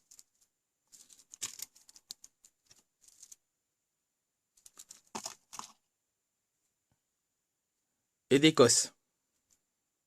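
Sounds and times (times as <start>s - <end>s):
small plastic parts clicking: 0.0s - 3.4s, 4.6s - 5.8s.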